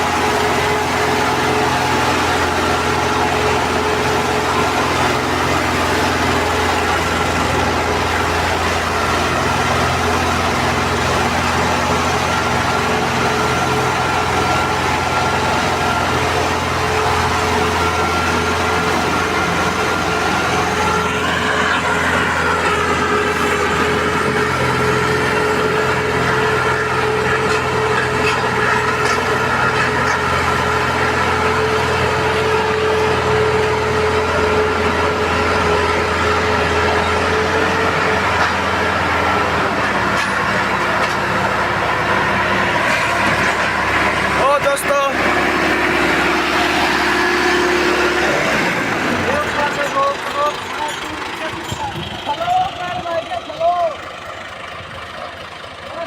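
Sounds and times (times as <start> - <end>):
machine whining tones: 0.0 - 53.1
combine harvester engine hum: 0.0 - 56.0.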